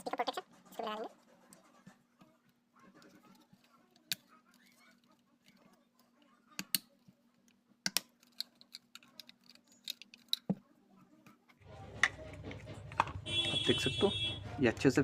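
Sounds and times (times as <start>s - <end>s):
plastic clicks and taps: 7.8s - 10.6s.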